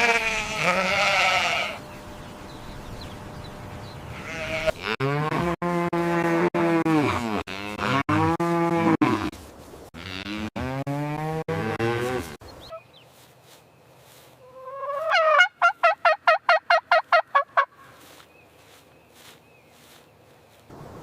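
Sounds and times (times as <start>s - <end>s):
cow mooing: 0.0s - 1.8s, 4.2s - 9.3s, 10.0s - 12.4s.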